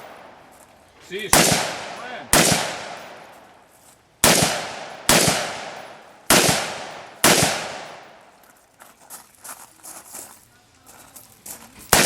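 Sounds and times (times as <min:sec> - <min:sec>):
gunshots with long echo: 0:01.3 - 0:03.4, 0:04.2 - 0:08.2.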